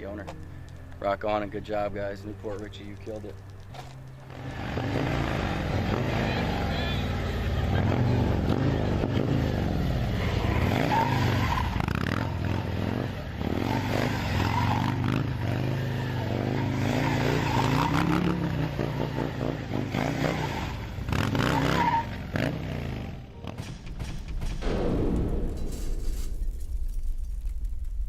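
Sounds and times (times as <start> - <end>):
motorcycle engine revving: 4.2 - 24.3.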